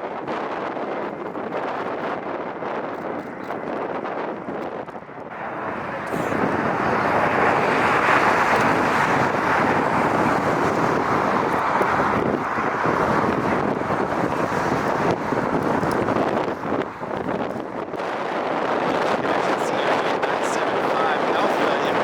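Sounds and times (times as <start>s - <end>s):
wind buffeting microphone: 0.0s - 22.0s
jet engines rushing: 5.3s - 22.0s.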